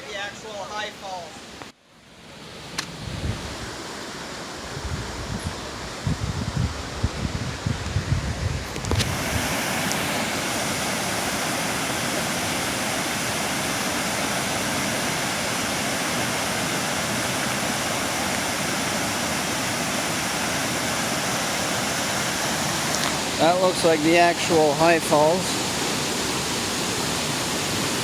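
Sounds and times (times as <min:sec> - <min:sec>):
wind on microphone rumble: 0:02.9 - 0:03.8, 0:04.6 - 0:09.5
waterfall rushing: 0:08.8 - 0:28.0.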